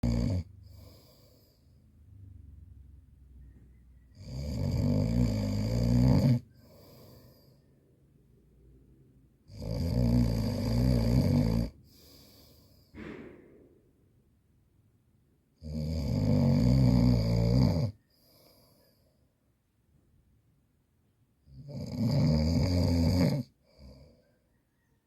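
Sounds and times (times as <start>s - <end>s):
woman snoring loudly: 0.0s - 1.1s, 4.2s - 6.5s, 9.5s - 11.8s, 15.6s - 18.0s, 21.6s - 24.1s
soft breath out: 0.6s - 1.9s, 6.5s - 7.8s, 11.8s - 13.7s, 18.0s - 19.4s.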